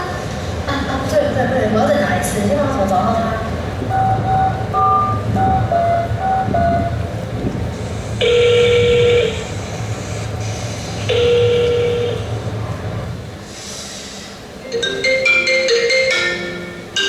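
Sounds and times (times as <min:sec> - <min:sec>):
horn blasts: 0:03.8 - 0:13.2
beeping notes: 0:03.9 - 0:07.1, 0:14.6 - 0:17.0.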